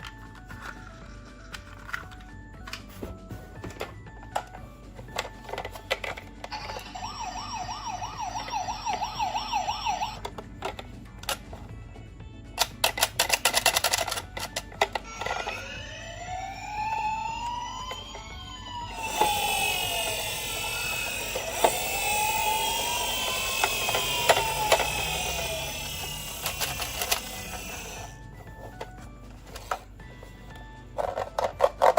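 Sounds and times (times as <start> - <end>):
toy siren wailing: 6.4 - 10.4, 14.8 - 28.2.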